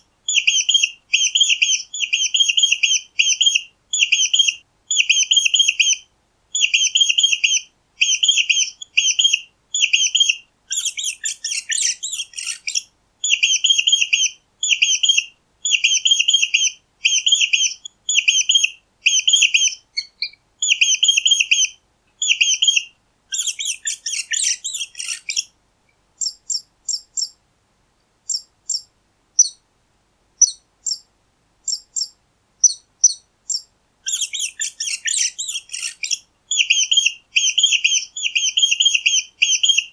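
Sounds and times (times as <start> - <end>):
mice squeaking: 6.6 - 25.5, 26.2 - 27.4, 28.3 - 29.6, 30.4 - 31.1, 31.7 - 39.9.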